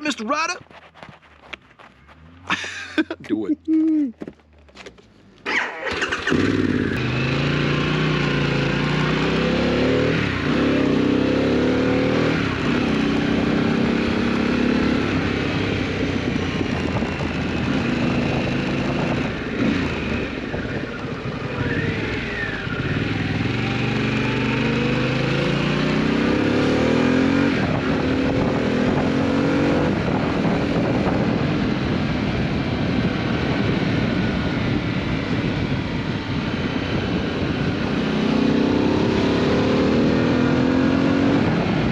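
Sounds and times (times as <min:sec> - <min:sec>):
motorcycle engine revving: 0:05.5 - 0:41.9.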